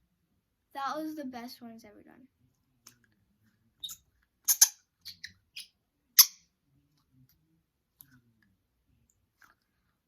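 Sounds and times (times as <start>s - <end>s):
squeaky whistles of squeezed toy: 3.8s - 6.4s.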